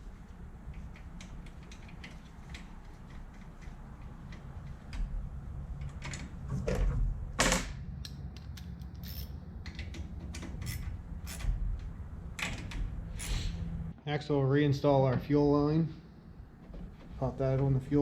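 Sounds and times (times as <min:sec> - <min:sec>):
ratchet clicking: 0:10.6 - 0:11.5.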